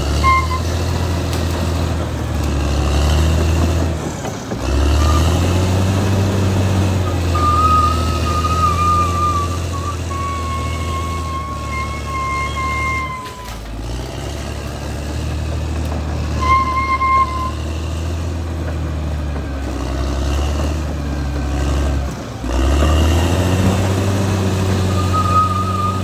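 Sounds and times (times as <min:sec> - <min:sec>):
bulldozer diesel engine running: 0:00.0 - 0:26.0
reversing alarm beeps: 0:07.2 - 0:13.6.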